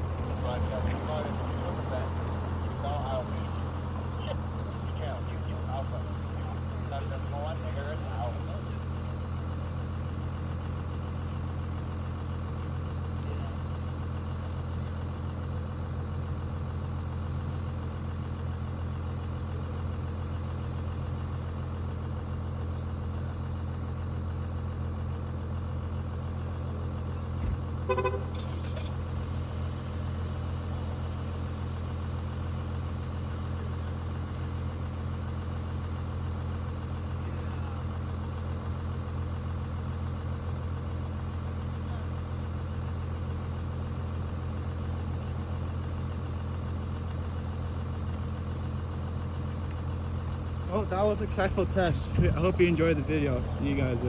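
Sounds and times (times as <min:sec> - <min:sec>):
vehicle engine idling: 0:00.0 - 0:54.0
horn toot: 0:27.8 - 0:28.5.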